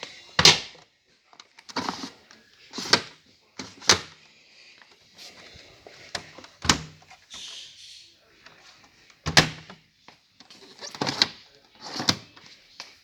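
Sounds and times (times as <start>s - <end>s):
appliance doors clunking shut: 6.6s - 7.0s, 9.3s - 9.7s.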